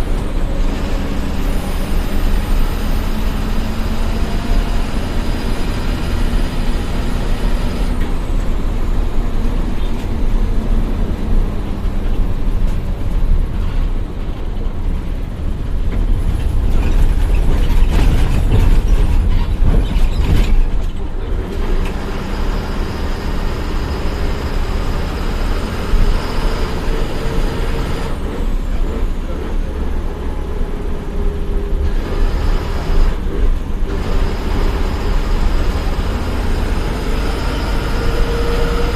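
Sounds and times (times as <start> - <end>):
bus engine and road noise: 0.0 - 38.9.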